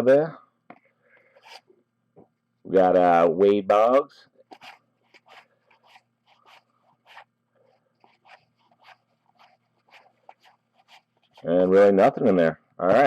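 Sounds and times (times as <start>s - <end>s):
cardboard cards sliding: 4.5s - 7.3s, 8.0s - 11.5s.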